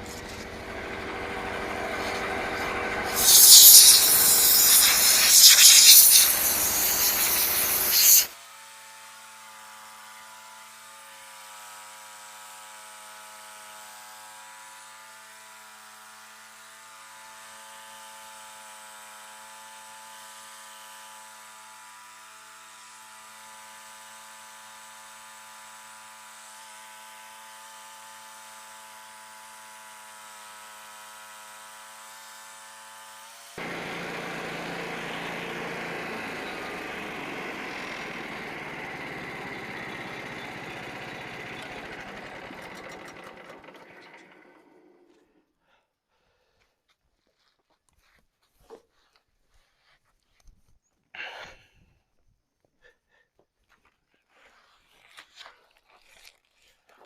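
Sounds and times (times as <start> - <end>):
saw blade cutting through log: 0.0 - 13.8, 15.0 - 44.5
bandsaw sawmill engine: 0.0 - 45.4.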